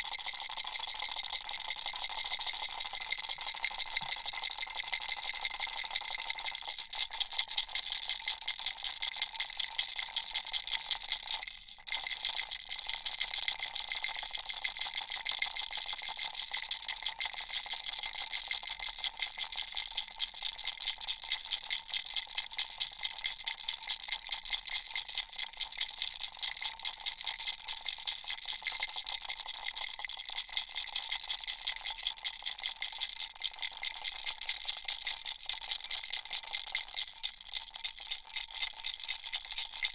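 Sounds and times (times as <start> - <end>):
baby rattle shaking: 28.8 - 39.9.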